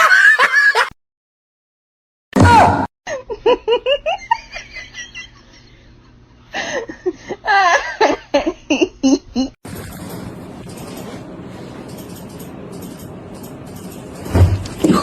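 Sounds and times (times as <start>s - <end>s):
person giggling and laughing: 6.6s - 9.6s.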